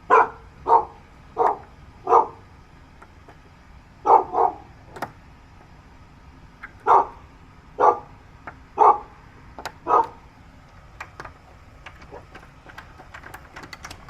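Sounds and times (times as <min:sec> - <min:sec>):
dog barking: 0:00.0 - 0:02.4, 0:04.0 - 0:04.8, 0:06.8 - 0:07.2, 0:07.8 - 0:08.2, 0:08.8 - 0:09.2, 0:09.8 - 0:10.2.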